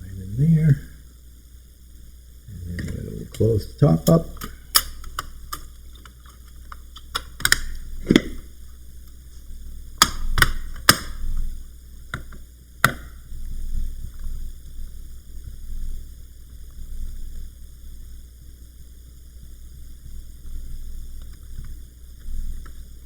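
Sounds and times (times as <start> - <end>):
laptop cover clicking into place: 7.0 - 8.4, 10.0 - 11.2.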